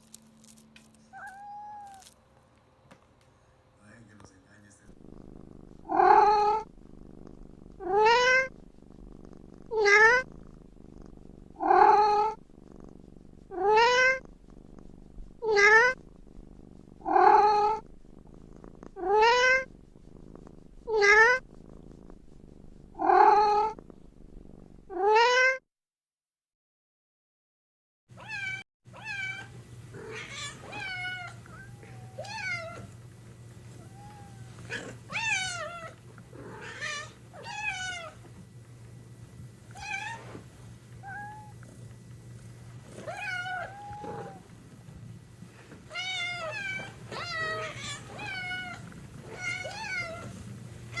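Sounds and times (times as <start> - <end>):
cat meowing: 1.1 - 2.1, 5.9 - 6.7, 7.8 - 8.5, 9.7 - 10.3, 13.5 - 14.2, 15.4 - 16.0, 19.0 - 19.7, 20.9 - 21.4, 24.9 - 25.6, 28.2 - 32.9, 33.8 - 38.2, 39.8 - 40.2, 41.0 - 41.6, 43.0 - 44.4, 45.9 - 50.3.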